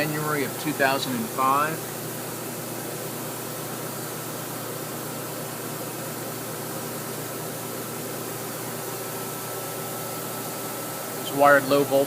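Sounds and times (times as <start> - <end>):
machine shop hum and hiss: 0.0 - 12.0.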